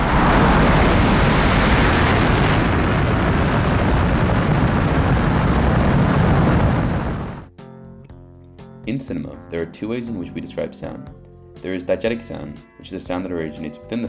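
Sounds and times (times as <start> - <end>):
rocket engines roaring: 0.0 - 7.5.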